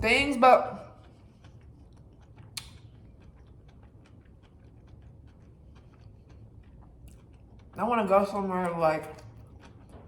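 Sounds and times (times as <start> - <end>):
close-miked chewing: 0.0 - 10.0.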